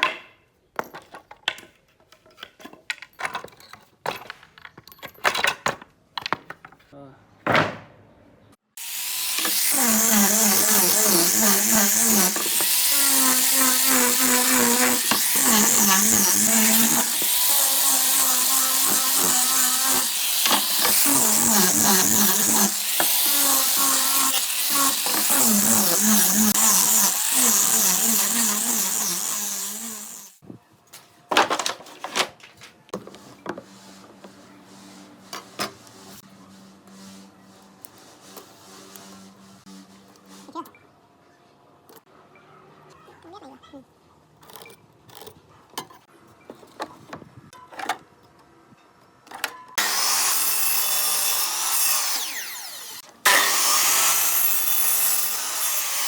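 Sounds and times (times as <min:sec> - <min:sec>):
power tool cutting wood: 0:08.8 - 0:30.4, 0:49.8 - 0:56.0.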